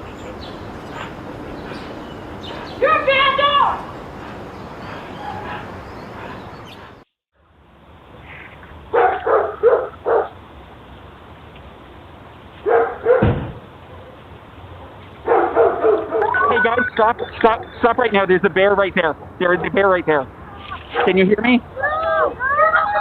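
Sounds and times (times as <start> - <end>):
dog barking: 8.9 - 10.4, 12.6 - 13.3, 13.9 - 16.3, 20.9 - 21.2.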